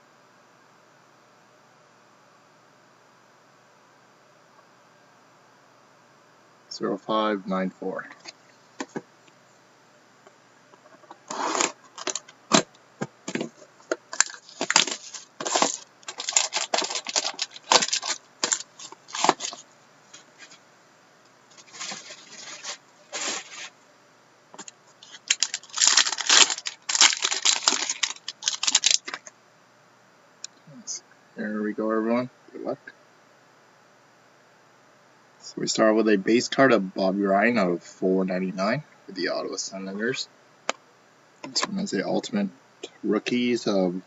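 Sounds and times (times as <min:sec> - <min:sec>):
plastic wrapping crinkling and tearing: 0:11.3 - 0:12.6, 0:14.1 - 0:19.6, 0:21.5 - 0:23.7, 0:24.6 - 0:29.3.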